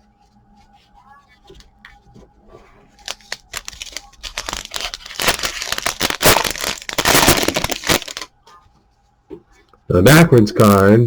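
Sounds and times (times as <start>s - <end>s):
plastic wrapper crinkling: 3.0s - 8.3s.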